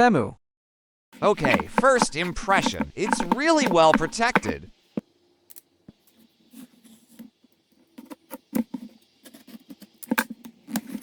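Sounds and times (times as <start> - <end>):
packaging crinkling and scratching: 1.2 - 4.6, 8.1 - 11.0.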